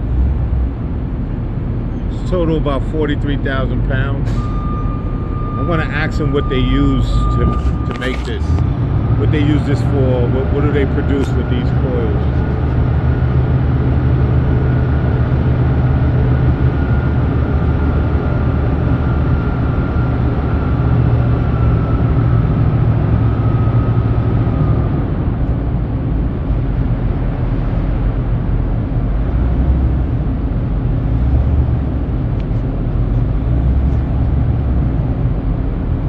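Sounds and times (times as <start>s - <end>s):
heavy machinery rumbling: 0.0s - 36.0s
faint falling whine: 2.0s - 12.9s.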